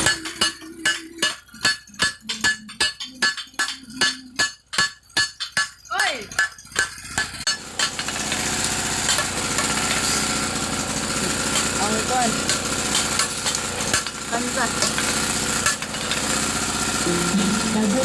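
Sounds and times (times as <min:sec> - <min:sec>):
hammer striking metal on anvil: 0:00.0 - 0:08.5
steady machine noise: 0:00.0 - 0:18.0.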